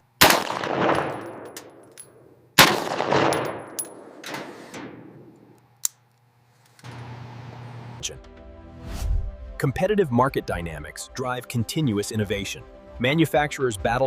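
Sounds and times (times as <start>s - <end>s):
rifle shots echoing: 0.2s - 2.0s, 2.6s - 5.4s.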